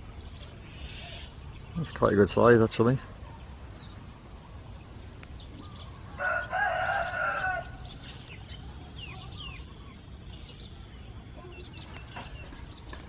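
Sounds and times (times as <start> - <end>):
small birds chirping: 0.0 - 13.0
rooster crowing: 6.0 - 7.9.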